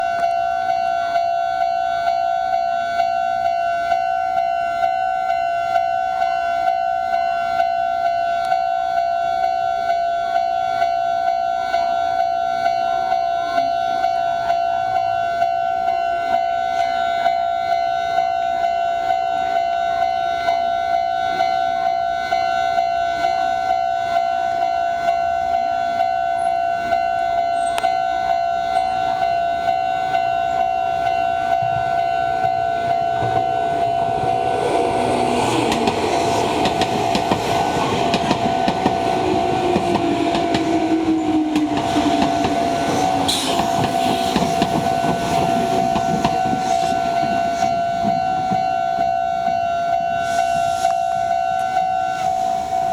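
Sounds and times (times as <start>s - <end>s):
level crossing warning bell: 0.0s - 52.9s.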